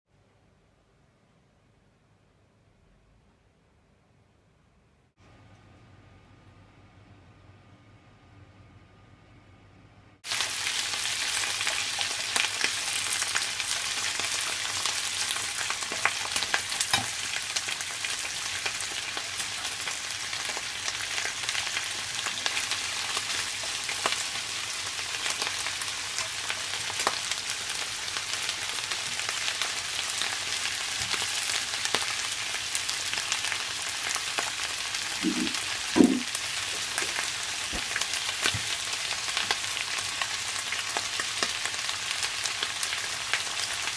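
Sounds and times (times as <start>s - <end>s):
food sizzling in a pan: 10.2s - 43.9s.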